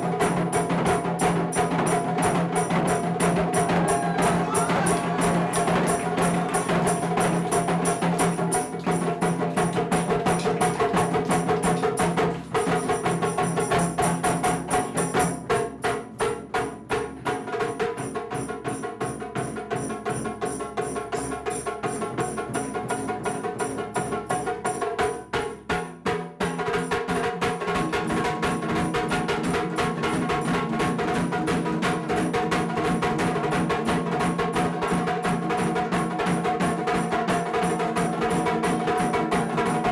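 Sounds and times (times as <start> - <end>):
taiko drums striking: 1.8 - 12.2.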